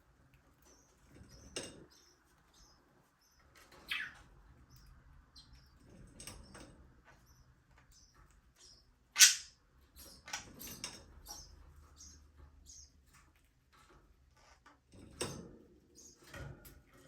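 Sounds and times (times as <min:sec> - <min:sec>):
budgerigars chirping: 0:03.3 - 0:04.2, 0:08.0 - 0:10.4.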